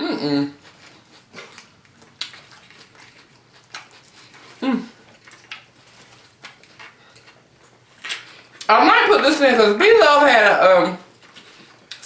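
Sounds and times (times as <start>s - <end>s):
chewing: 0.0s - 8.7s, 11.1s - 12.0s.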